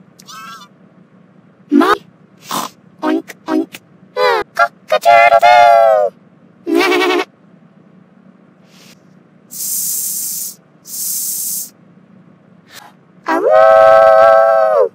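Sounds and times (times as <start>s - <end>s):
person hissing: 8.7s - 11.7s.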